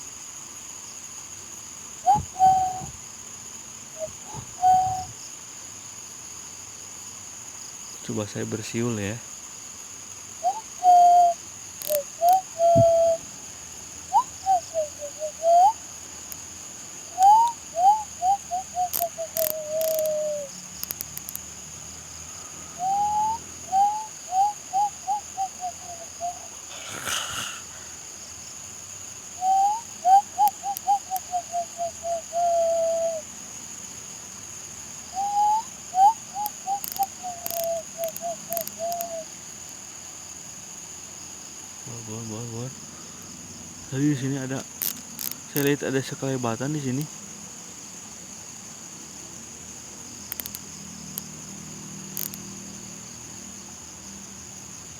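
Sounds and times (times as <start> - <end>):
crickets chirring: 0.0 - 54.9
man whistling: 2.1 - 3.0, 4.0 - 5.2, 10.5 - 13.2, 17.2 - 20.5, 22.8 - 27.7, 32.4 - 33.2, 35.2 - 39.2.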